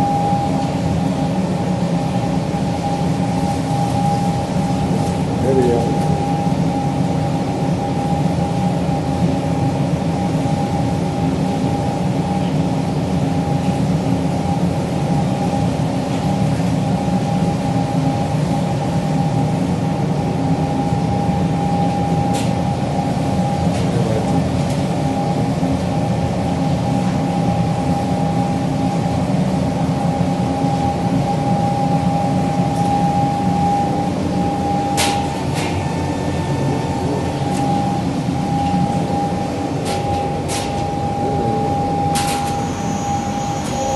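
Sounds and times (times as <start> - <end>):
ventilation fans running: 0.0 - 43.9.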